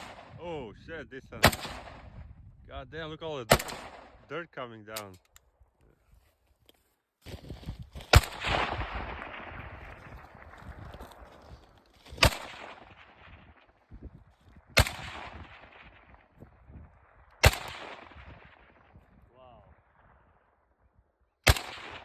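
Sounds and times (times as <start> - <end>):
gunshots with rolling echo: 0.0 - 0.7, 1.3 - 2.4, 3.4 - 5.1, 8.1 - 11.5, 12.1 - 20.6, 21.4 - 22.0.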